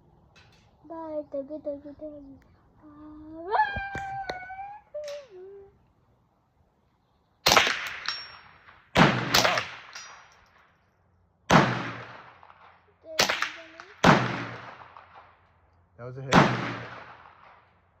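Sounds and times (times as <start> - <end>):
suppressed rifle shots: 7.4 - 10.7, 11.5 - 15.5, 16.3 - 17.8
bullet ringing steel target: 7.5 - 10.6.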